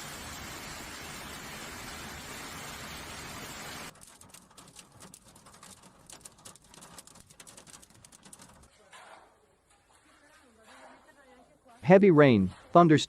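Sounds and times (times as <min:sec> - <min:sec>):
heavy rain hissing: 0:00.0 - 0:03.9
drops pattering on hard surface: 0:03.9 - 0:08.8.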